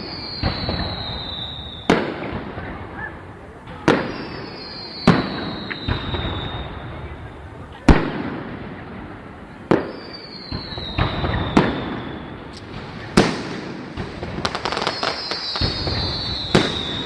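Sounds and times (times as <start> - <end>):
crackling fireworks bursts: 0.0 - 17.0
fireworks whistling: 0.0 - 17.0
fireworks shells bursting: 9.8 - 17.0.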